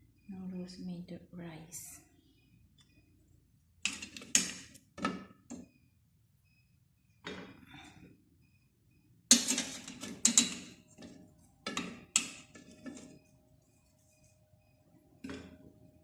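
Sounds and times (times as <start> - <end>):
kitchenware clattering: 9.3 - 11.1.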